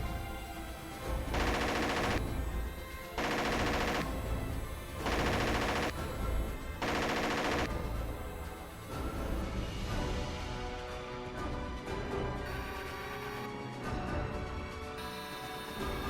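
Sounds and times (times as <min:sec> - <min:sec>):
background music: 0:00.0 - 0:16.0
machine-gun fire bursts: 0:01.2 - 0:08.2.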